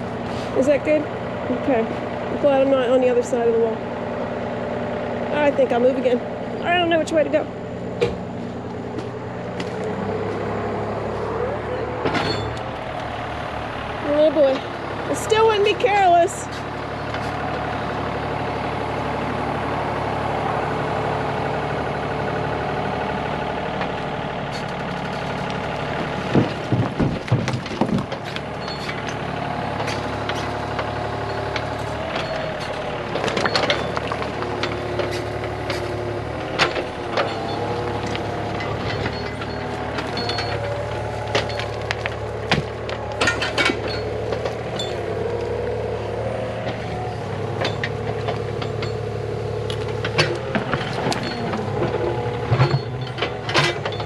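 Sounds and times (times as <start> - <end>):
engine running: 0.0 - 54.0
stones knocking and clunking: 26.0 - 29.2, 31.5 - 45.4.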